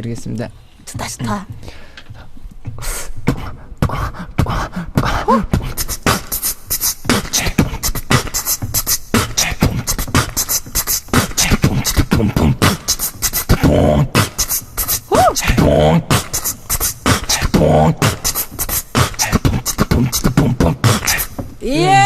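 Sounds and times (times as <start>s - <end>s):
person beatboxing: 0.9s - 21.6s
short pitched vocal sounds: 3.3s - 8.4s, 11.1s - 21.8s.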